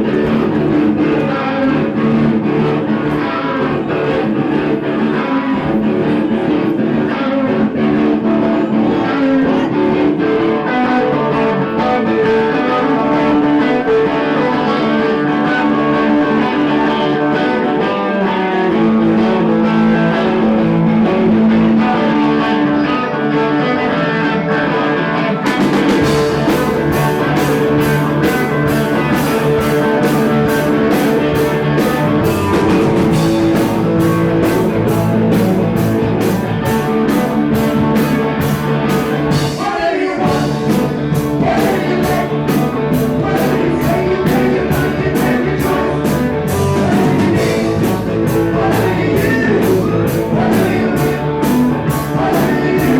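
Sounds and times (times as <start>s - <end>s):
electric guitar playing: 0.0s - 52.9s
drums steady beat: 25.5s - 52.9s.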